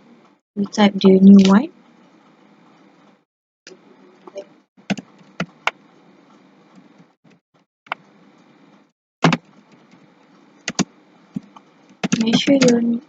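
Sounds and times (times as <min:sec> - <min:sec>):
computer keyboard keys clicking: 0:10.7 - 0:12.9.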